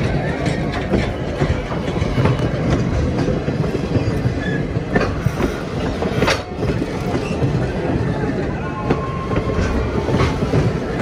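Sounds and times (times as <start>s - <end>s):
train wheels clacking: 0.0s - 11.0s.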